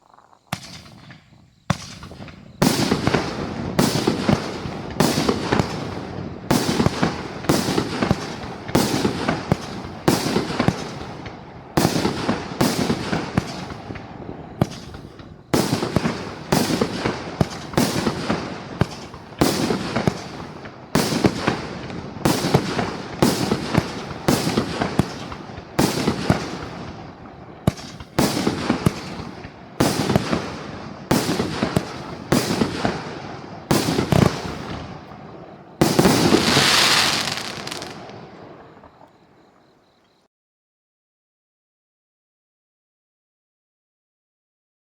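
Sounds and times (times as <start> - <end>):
firework shots banging: 0.5 - 11.1, 33.7 - 34.8, 35.8 - 38.2.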